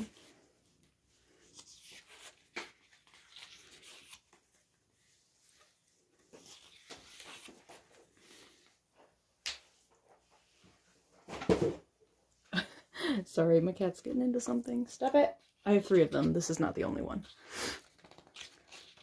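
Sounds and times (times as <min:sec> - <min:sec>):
pages being turned: 0:01.3 - 0:08.8, 0:17.8 - 0:19.0.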